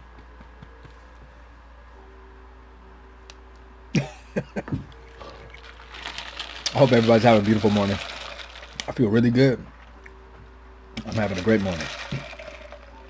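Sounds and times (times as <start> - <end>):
faint room hum: 0.0 - 13.0.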